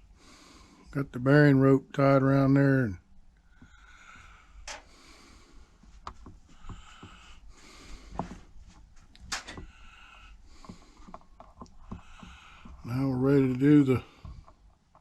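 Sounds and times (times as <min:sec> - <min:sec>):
clicks and light taps: 0:03.3 - 0:05.0, 0:05.8 - 0:07.2, 0:10.6 - 0:15.0
soft rustling: 0:05.1 - 0:15.0.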